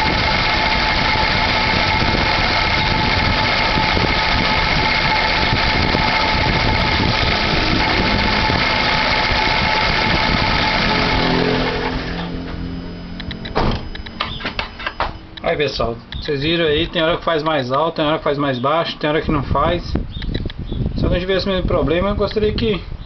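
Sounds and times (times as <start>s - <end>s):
car engine idling: 0.0s - 17.8s
high-pitched clutch noise: 0.0s - 18.0s.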